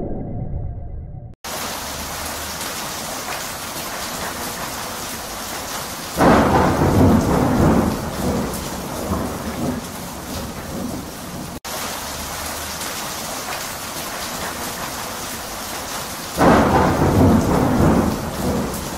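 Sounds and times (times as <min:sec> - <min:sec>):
steady rain hiss: 0:01.5 - 0:18.9
thunder rolling: 0:06.2 - 0:11.6, 0:16.4 - 0:18.9.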